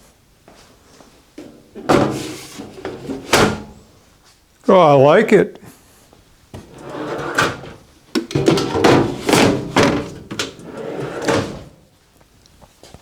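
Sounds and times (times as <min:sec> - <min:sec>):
tool-box drawers sliding: 0:01.4 - 0:03.8, 0:06.6 - 0:11.8.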